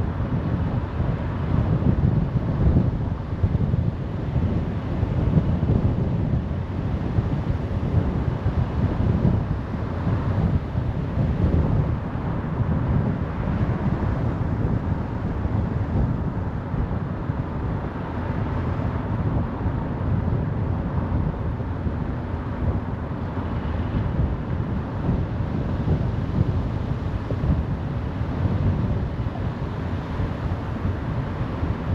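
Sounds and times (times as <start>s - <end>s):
tyre and wind noise: 0.0s - 31.9s.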